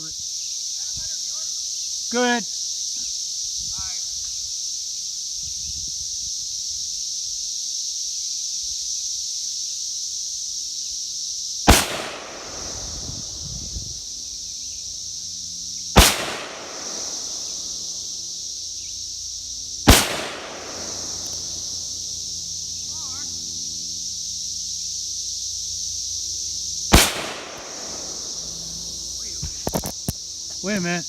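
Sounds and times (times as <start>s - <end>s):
high insect chirring: 0.0s - 31.0s
rifle shots with echo: 11.7s - 13.2s, 16.0s - 17.9s, 19.9s - 22.0s, 26.9s - 28.6s.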